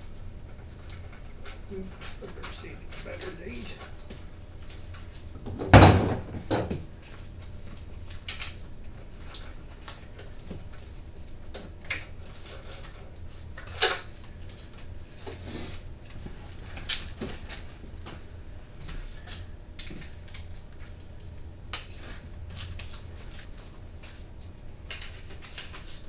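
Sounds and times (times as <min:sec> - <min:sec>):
tools clattering: 0:05.4 - 0:06.8.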